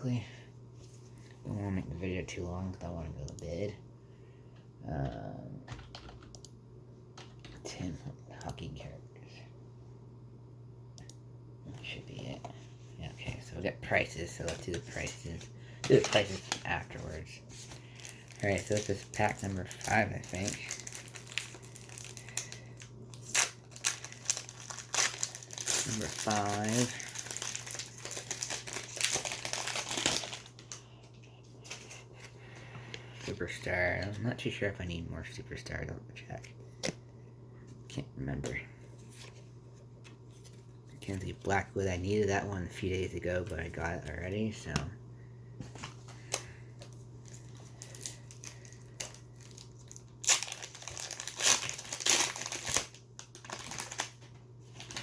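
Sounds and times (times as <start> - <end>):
foil wrapper crinkling: 14.2 - 33.4, 45.7 - 55.0.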